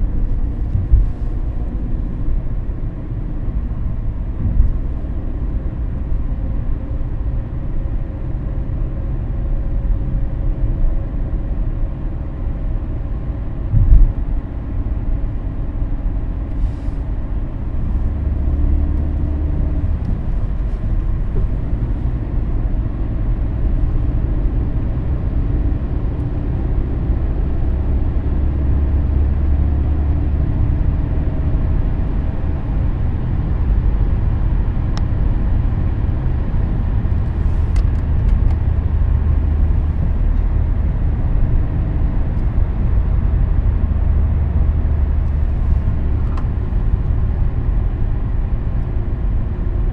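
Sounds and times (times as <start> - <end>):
car engine and road noise: 0.0 - 49.9
loud thump: 13.7 - 14.2.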